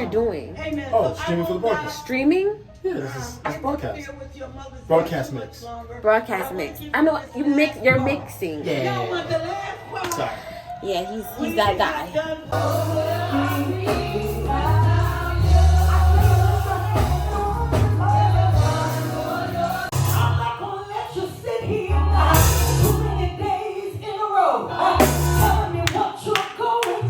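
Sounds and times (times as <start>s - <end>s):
gospel singers with band: 7.4s - 27.0s
heavy bass line: 12.6s - 20.5s, 21.9s - 23.4s, 24.9s - 25.8s.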